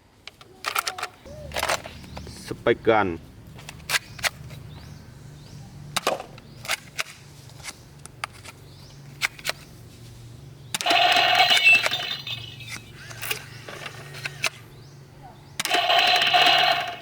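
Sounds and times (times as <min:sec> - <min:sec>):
toy gun clicks: 0:00.6 - 0:01.9, 0:10.8 - 0:12.0, 0:15.6 - 0:17.0
toy gun rattling burst: 0:10.8 - 0:14.6, 0:15.6 - 0:17.0.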